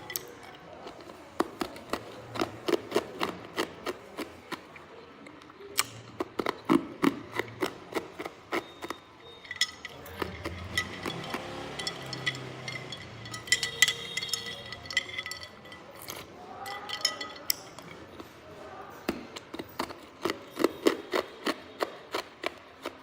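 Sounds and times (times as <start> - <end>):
chewing crunching ice: 0.0 - 23.0
ice cubes clinking against glass: 9.2 - 18.1.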